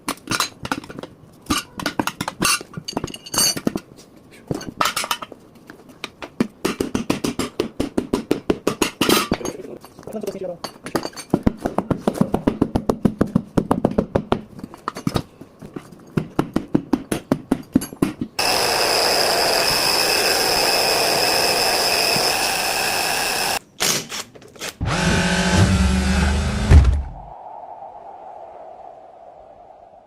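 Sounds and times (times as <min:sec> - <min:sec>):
motor humming: 0:18.4 - 0:23.6.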